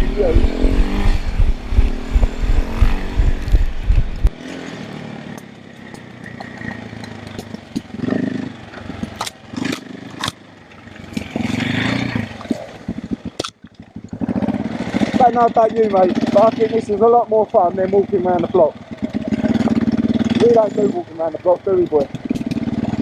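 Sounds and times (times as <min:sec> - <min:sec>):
engine clatter: 0:00.0 - 0:23.0
motorcycle engine rumbling: 0:00.0 - 0:23.0
sharp clicks: 0:00.4 - 0:04.4, 0:09.0 - 0:10.4, 0:12.4 - 0:14.2.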